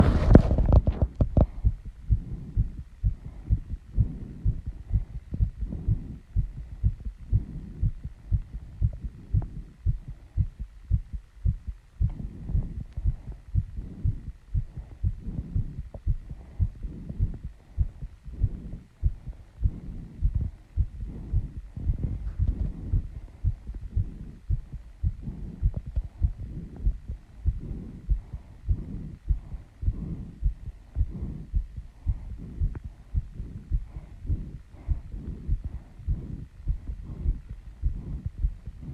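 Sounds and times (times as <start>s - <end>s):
fast heartbeat thuds: 0.0s - 38.9s
woman breathing heavily: 0.0s - 38.9s.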